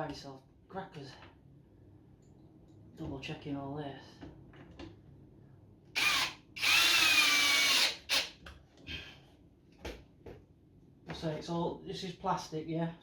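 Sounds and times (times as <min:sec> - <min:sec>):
power screwdriver whining: 0:06.0 - 0:08.3.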